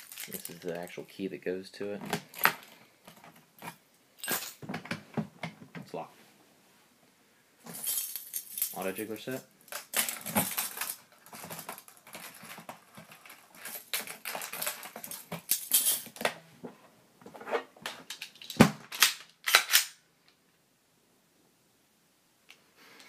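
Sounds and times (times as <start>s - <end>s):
keys rattling in a lock: 0.0s - 0.7s, 7.7s - 9.1s, 9.7s - 16.2s.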